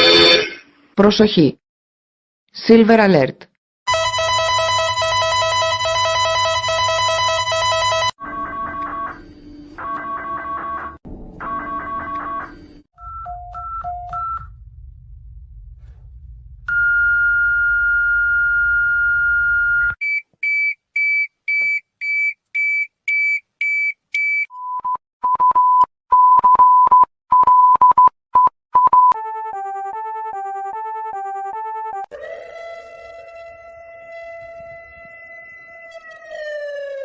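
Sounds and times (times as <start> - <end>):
low hum: 11.1 - 19.9.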